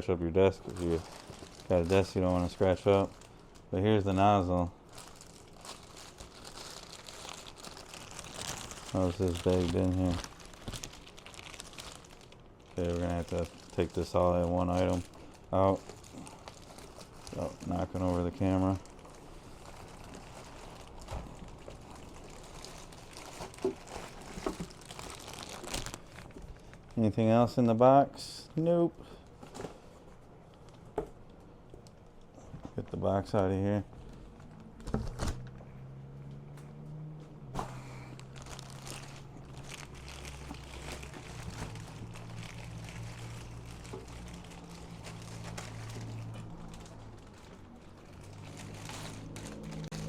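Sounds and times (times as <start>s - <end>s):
packaging knocks and rustles: 0.6s - 3.6s, 4.9s - 26.8s, 37.6s - 50.0s.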